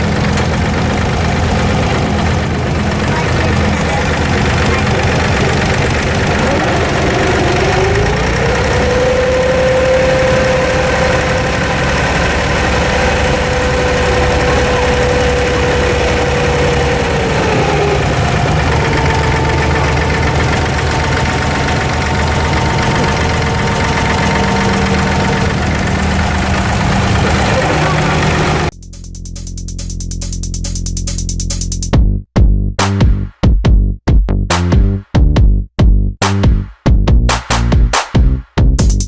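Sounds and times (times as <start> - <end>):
boat diesel engine running: 0.0 - 28.7
engine whine: 0.0 - 28.7.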